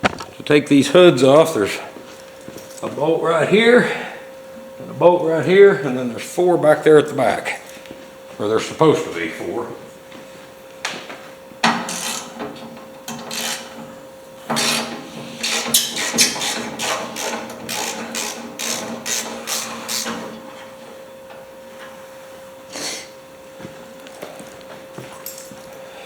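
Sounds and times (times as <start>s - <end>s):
ratchet wrench clicking: 13.3s - 13.7s, 15.4s - 20.1s.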